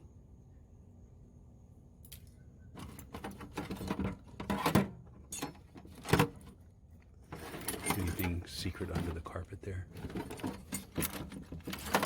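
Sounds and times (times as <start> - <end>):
tools clattering and scraping: 2.8 - 6.6, 7.2 - 12.0.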